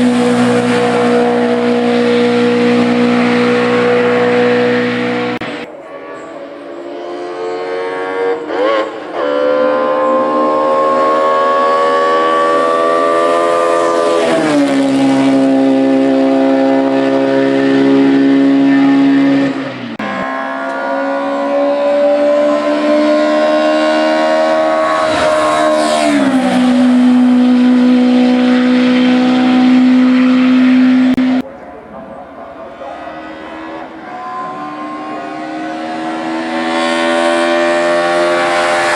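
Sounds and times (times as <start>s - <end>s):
racing car engine at full throttle: 0.0s - 38.9s.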